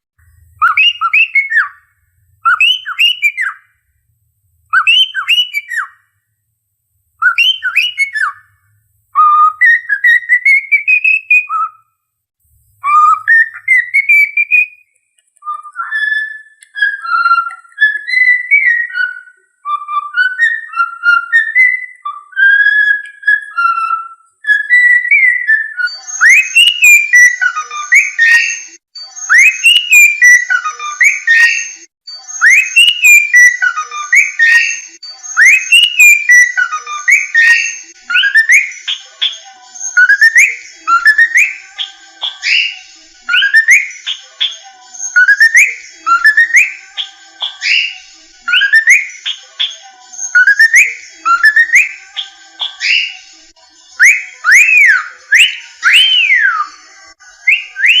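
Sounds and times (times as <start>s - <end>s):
upward-swooping whistles: 0.2s - 3.8s, 4.7s - 6.2s, 7.2s - 11.9s, 12.8s - 58.0s
person whistling a tune: 19.7s - 39.1s, 39.9s - 44.4s, 45.0s - 49.2s, 50.2s - 53.2s, 54.0s - 56.8s, 57.5s - 58.0s.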